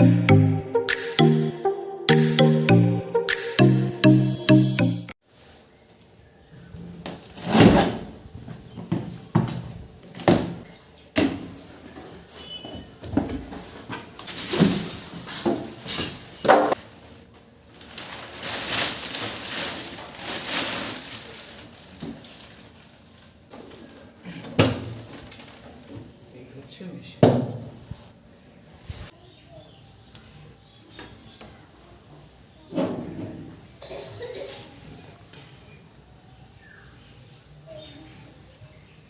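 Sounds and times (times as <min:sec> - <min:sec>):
rustling scrapes: 0:11.6 - 0:24.2.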